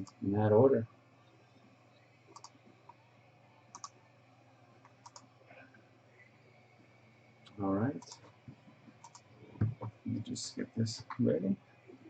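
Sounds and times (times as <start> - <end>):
computer mouse double-clicks: 2.3 - 2.6, 3.7 - 4.0, 5.0 - 5.2, 9.0 - 9.2.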